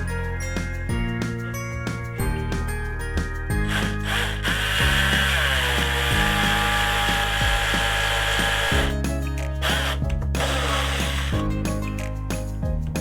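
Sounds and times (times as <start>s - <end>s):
background music with bass line: 0.0s - 13.0s
power drill running: 3.6s - 9.0s, 9.6s - 11.4s.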